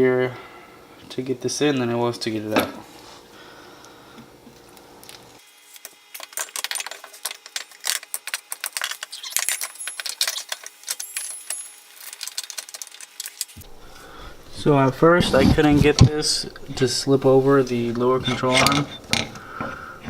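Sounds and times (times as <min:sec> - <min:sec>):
metallic tool clinks and knocks: 0:09.3 - 0:12.5.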